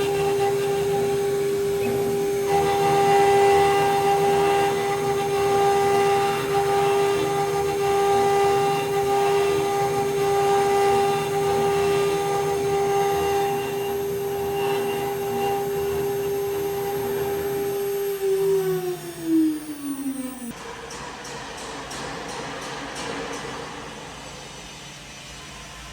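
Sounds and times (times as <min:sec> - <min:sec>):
mill spindle high-pitched whine: 0:00.0 - 0:20.6
rough metal cutting noise: 0:00.0 - 0:20.6.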